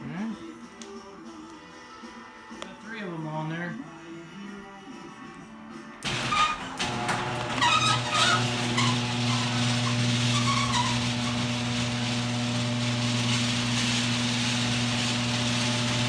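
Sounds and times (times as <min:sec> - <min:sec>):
machine humming with hiss: 0:06.0 - 0:16.0.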